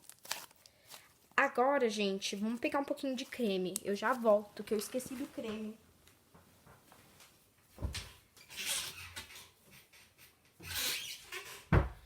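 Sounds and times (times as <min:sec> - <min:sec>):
soft rustling: 0:02.2 - 0:05.8.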